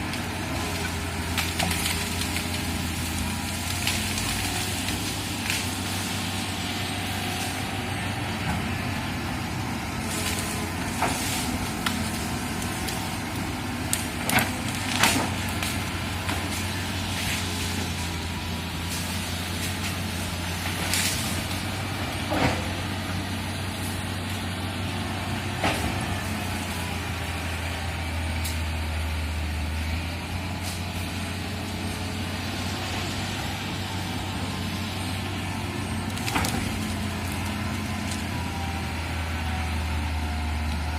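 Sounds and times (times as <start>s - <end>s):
excavator diesel engine running: 0.0s - 40.9s
sharp cracks and knocks: 13.9s - 17.7s, 36.1s - 38.2s.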